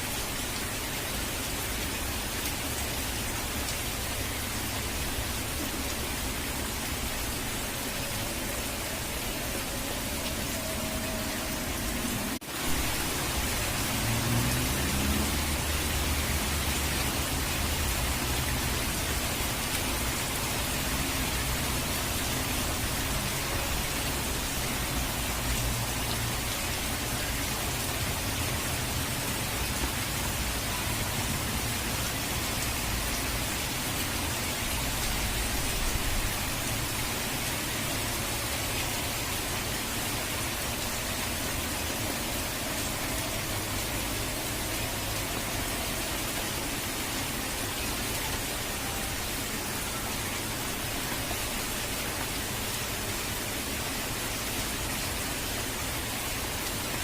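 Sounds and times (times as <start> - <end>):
heavy rain and falling water: 0.0 - 57.0.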